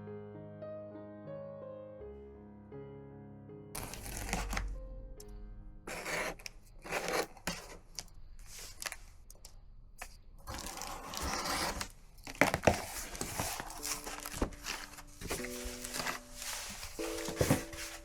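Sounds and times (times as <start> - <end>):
soft music notes: 0.0 - 6.1, 13.3 - 18.0
crinkling and tearing handling noises: 3.8 - 4.8, 5.9 - 18.0.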